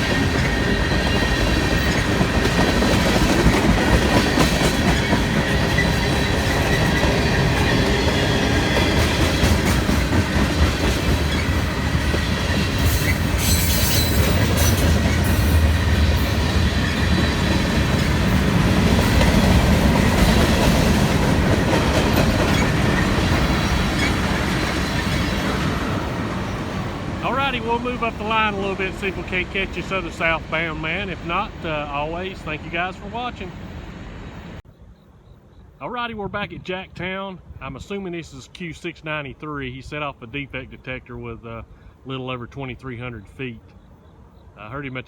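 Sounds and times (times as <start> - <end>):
freight train rumbling past: 0.0 - 34.6
high wheel squeal: 12.5 - 18.2.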